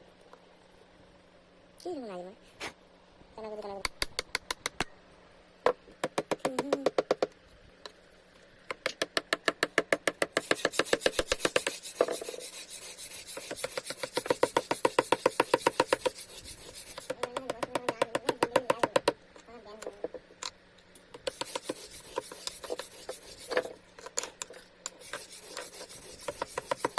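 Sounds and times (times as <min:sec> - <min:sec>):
hand tool rubbing on wood: 0:10.4 - 0:19.1, 0:21.2 - 0:26.9.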